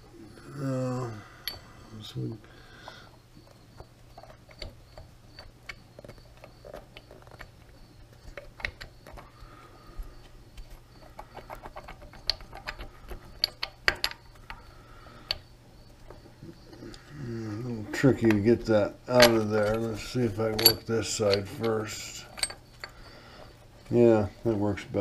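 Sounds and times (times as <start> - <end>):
steady low hum: 0.0 - 25.0
metal tools clicking and clinking: 1.4 - 2.3, 11.1 - 14.7, 17.9 - 23.1.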